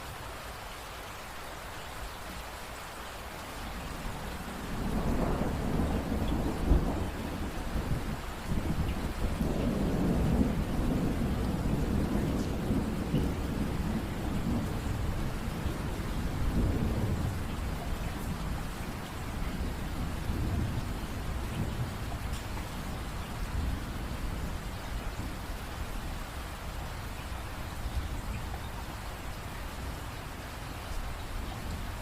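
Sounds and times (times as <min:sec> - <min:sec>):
steady rain: 0:00.0 - 0:32.0
thunder rumbling: 0:03.9 - 0:26.4.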